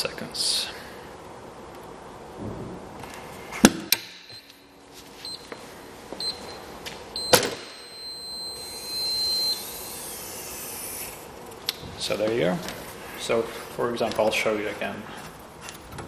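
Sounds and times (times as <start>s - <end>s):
long steady high beep: 6.2s - 10.1s
short high beeps: 7.2s - 9.8s.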